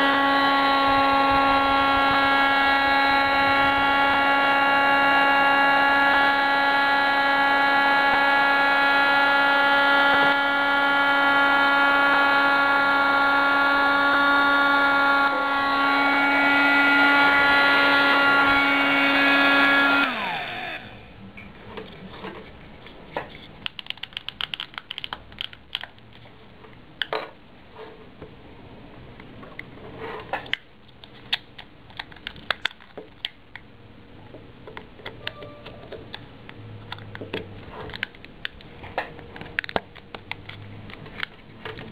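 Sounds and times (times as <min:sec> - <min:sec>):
small vacuum motor whining: 0:00.0 - 0:21.1.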